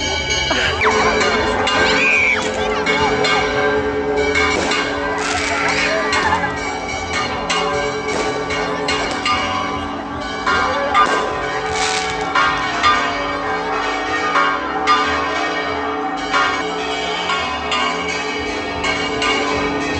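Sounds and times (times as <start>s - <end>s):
church bells pealing: 0.0s - 19.9s.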